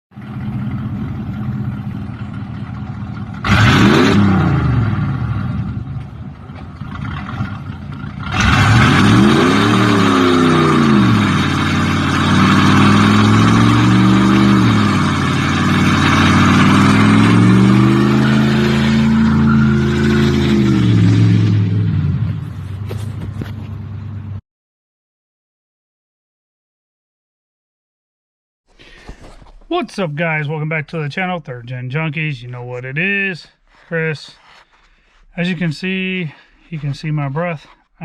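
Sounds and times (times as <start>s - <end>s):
car engine idling and revving: 0.1s - 24.4s.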